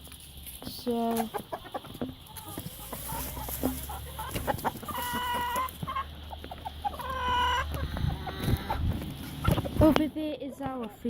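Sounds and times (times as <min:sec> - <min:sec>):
chickens clucking: 0:00.0 - 0:11.0
chicken drawn-out call: 0:01.2 - 0:09.8.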